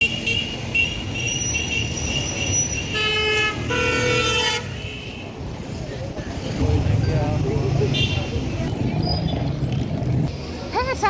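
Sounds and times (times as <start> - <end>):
road traffic rumbling: 0.0 - 11.0
vehicle horn blasts: 2.6 - 5.2.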